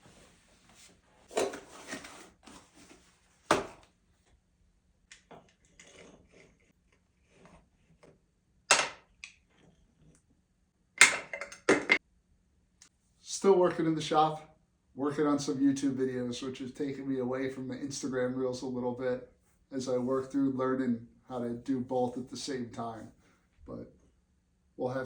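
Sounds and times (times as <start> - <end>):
hard objects clattering and knocking: 11.0 - 12.0.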